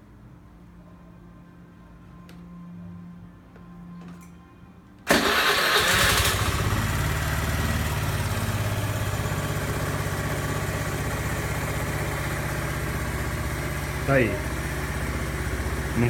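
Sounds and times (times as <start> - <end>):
scooter engine idling: 5.1 - 16.0.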